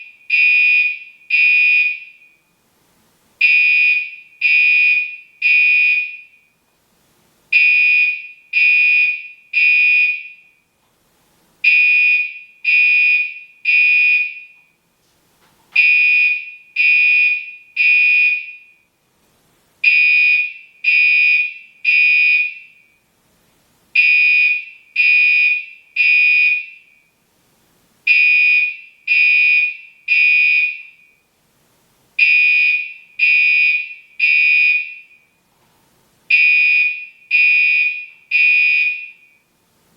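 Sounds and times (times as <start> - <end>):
fire alarm horn blasts: 0.0 - 2.4, 3.4 - 6.5, 7.5 - 10.6, 11.6 - 14.8, 15.8 - 18.9, 19.8 - 23.0, 24.0 - 27.1, 28.1 - 31.2, 32.2 - 35.4, 36.3 - 39.5.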